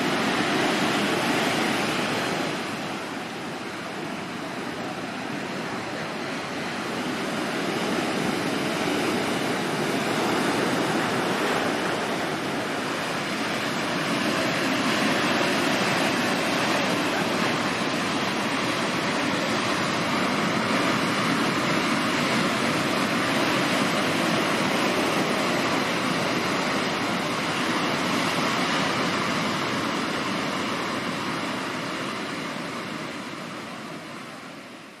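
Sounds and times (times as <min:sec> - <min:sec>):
surf crashing on shore: 0:00.0 - 0:35.0.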